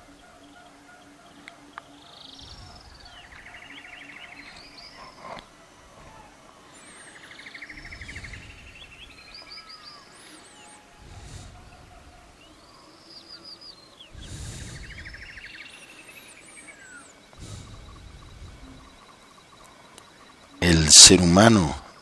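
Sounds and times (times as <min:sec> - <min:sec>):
faint low pulsing tone: 0:01.9 - 0:09.8, 0:10.8 - 0:20.6
songbird trilling and whistling: 0:06.0 - 0:20.5.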